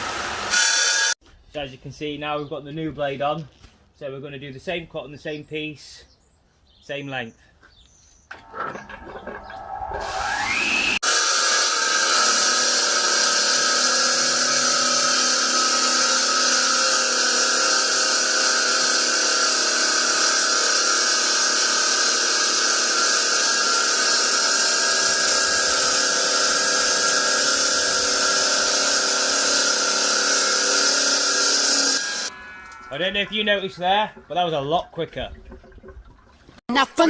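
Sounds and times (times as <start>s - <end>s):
saw grinding whine: 0.0s - 1.2s, 8.3s - 34.4s.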